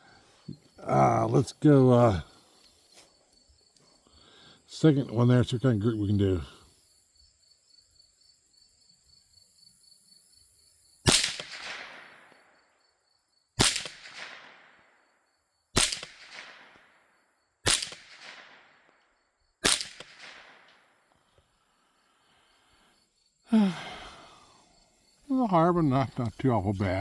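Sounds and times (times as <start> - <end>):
rifle shots with echo: 11.1 - 12.3, 13.6 - 15.0, 15.8 - 18.9, 19.6 - 21.0.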